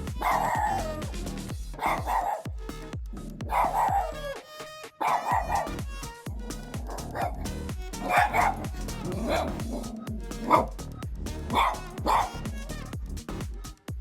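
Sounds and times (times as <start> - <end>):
background music with steady beat: 0.0 - 14.0
dog barking: 0.2 - 1.0, 1.8 - 2.5, 3.4 - 4.2, 5.0 - 5.8, 6.8 - 7.4, 8.0 - 10.7, 11.5 - 12.4.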